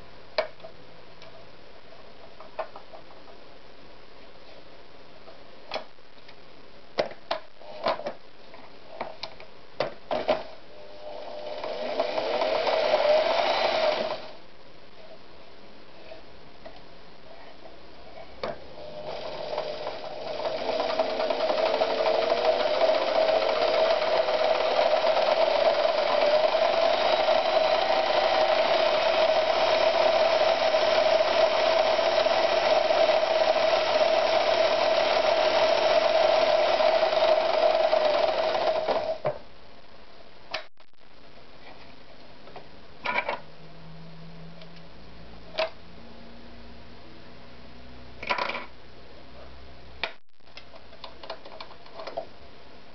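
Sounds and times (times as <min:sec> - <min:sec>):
sewing machine running: 0:10.9 - 0:14.4, 0:18.8 - 0:39.2.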